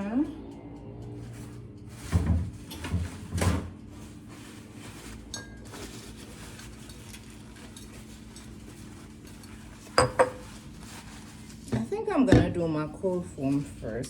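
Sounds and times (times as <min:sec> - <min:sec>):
dishes and glassware clinking: 0:05.3 - 0:08.5, 0:09.4 - 0:10.5.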